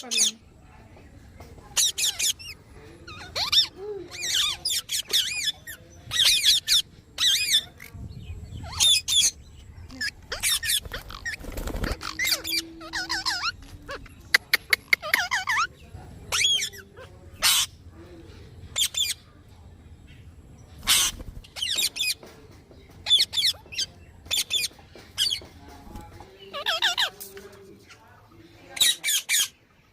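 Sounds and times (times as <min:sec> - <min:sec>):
parrot screeching: 0:10.3 - 0:14.0, 0:20.9 - 0:21.1.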